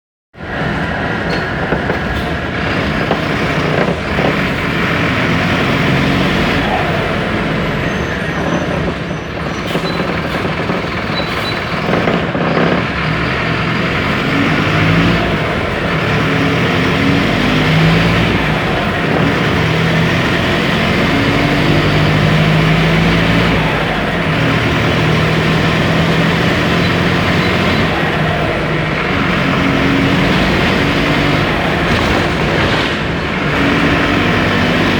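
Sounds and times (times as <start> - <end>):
bus diesel engine running: 0.3 - 34.9
dense rushing noise: 0.4 - 7.8, 27.6 - 34.9.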